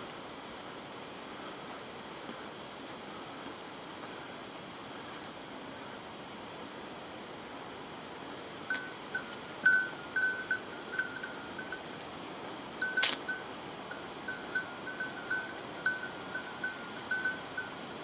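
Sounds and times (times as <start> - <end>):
background hiss: 0.0 - 18.0
bell jingling while walking: 8.7 - 12.1, 12.8 - 18.0.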